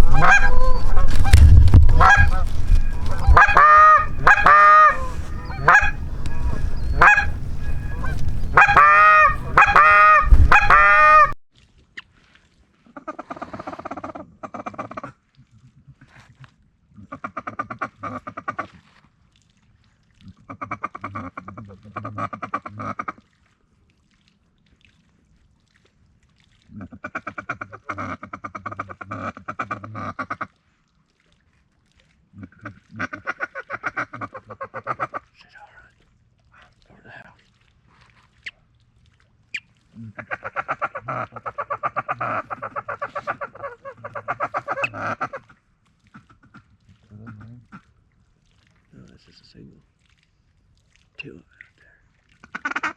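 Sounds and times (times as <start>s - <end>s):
duck call quacks: 0.0s - 11.4s, 52.5s - 52.9s.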